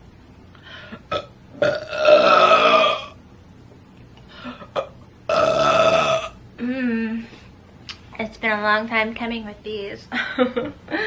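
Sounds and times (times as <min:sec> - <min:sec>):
woman burping: 0:01.0 - 0:03.2, 0:04.5 - 0:07.2.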